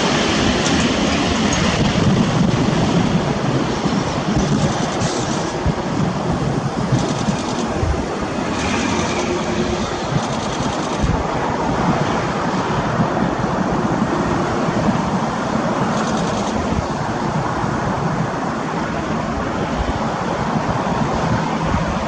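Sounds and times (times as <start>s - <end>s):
turboprop engine rumble: 0.0s - 22.0s.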